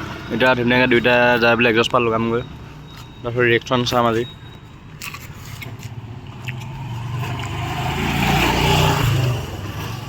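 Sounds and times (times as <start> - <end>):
road noise: 0.0 - 10.0.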